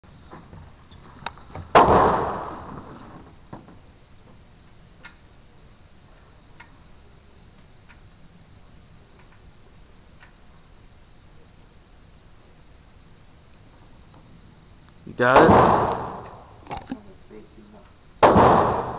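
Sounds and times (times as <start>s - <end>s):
shotgun shot with echo: 1.7s - 2.9s, 15.3s - 16.4s, 18.2s - 18.9s
small clicks: 6.6s - 6.8s, 9.2s - 9.4s, 10.2s - 10.4s.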